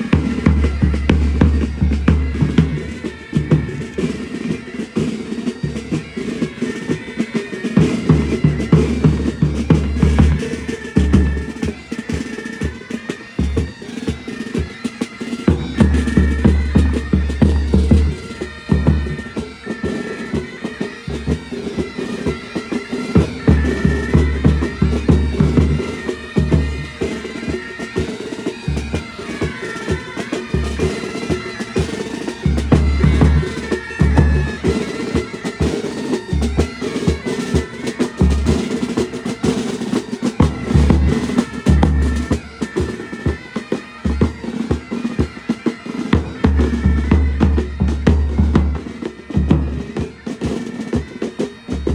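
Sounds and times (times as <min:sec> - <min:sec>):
bagpipes with drones: 0:00.0 - 0:51.9
snare drums rattling: 0:29.4 - 0:43.0.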